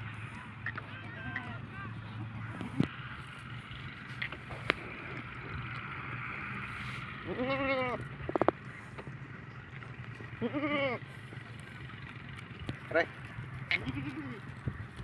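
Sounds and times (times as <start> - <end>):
goat bleating: 7.2 - 8.2, 10.3 - 11.2, 12.9 - 14.9.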